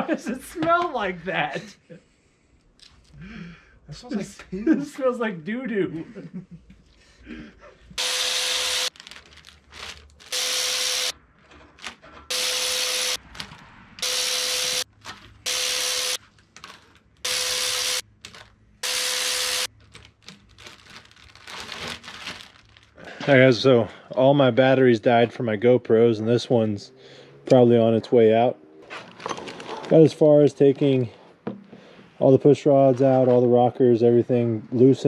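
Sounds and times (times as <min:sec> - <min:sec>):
impact wrench whining: 0:08.0 - 0:09.0, 0:10.2 - 0:11.2, 0:12.2 - 0:16.3, 0:17.2 - 0:18.2, 0:18.8 - 0:19.8.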